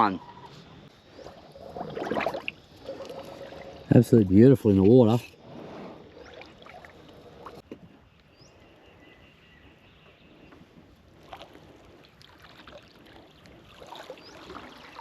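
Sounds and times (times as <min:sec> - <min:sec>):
water dripping and splashing: 0:11.2 - 0:15.0.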